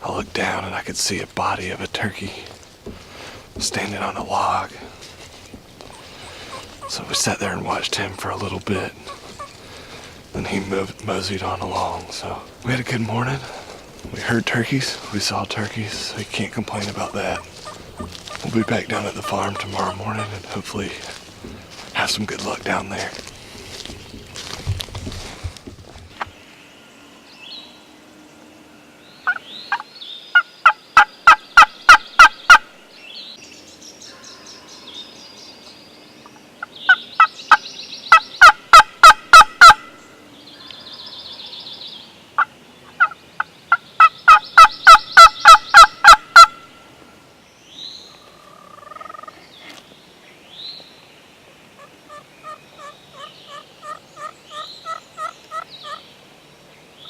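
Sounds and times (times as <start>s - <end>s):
songbird calls: 0.0s - 24.7s, 26.0s - 57.0s
wild turkey yelping: 5.8s - 7.4s, 8.6s - 9.6s, 16.8s - 20.4s, 29.2s - 32.6s, 36.9s - 39.9s, 42.4s - 43.2s, 44.0s - 46.6s, 48.1s - 49.3s, 51.8s - 56.0s.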